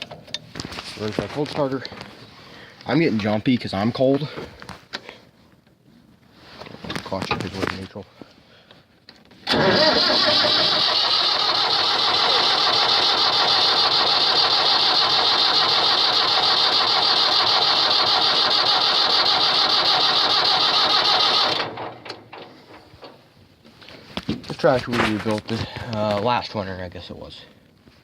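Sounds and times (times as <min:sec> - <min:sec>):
diesel engine cranking: 0:09.4 - 0:23.3.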